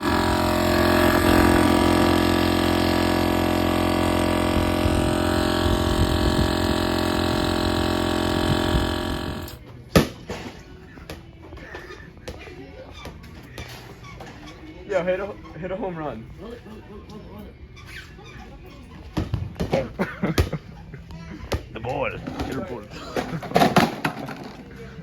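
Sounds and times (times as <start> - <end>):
motor humming: 0.0 - 9.6.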